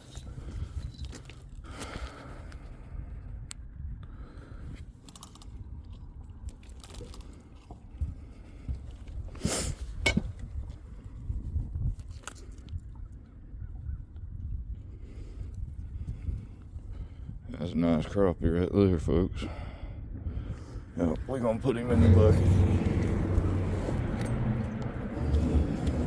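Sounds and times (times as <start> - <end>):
low steady rumble: 19.6 - 26.0.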